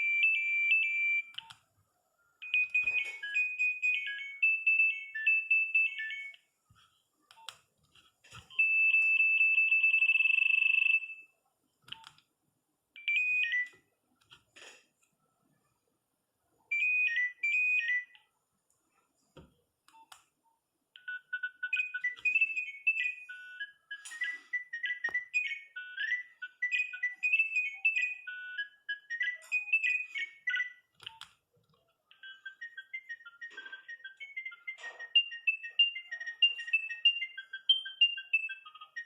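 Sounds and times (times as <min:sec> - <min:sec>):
phone ringtone beeping melody: 0:00.0 - 0:01.5, 0:02.4 - 0:06.5, 0:08.5 - 0:11.3, 0:13.0 - 0:13.8, 0:16.7 - 0:18.2, 0:21.0 - 0:31.3, 0:32.1 - 0:39.0.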